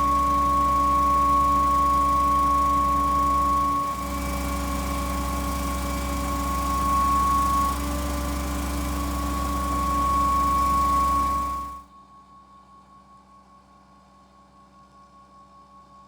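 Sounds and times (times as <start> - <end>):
concrete pump engine drone: 0.0 - 11.8
high whine: 0.0 - 11.8.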